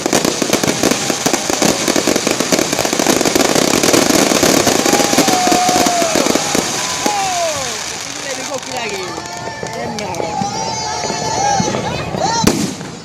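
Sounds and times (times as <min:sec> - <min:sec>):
firecrackers crackling: 0:00.0 - 0:13.0.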